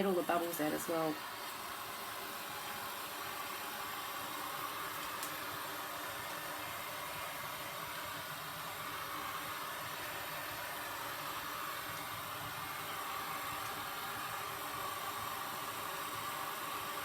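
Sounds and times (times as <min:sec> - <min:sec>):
heat gun blowing air: 0:00.0 - 0:17.0.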